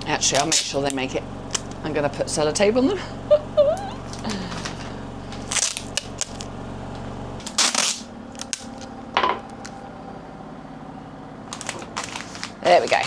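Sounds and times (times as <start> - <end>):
paper handling: 0.0 - 1.8, 4.0 - 6.5, 7.4 - 9.8, 11.5 - 13.0
sticky tape tearing: 0.3 - 1.8, 4.0 - 6.5, 7.4 - 8.9, 11.5 - 13.0.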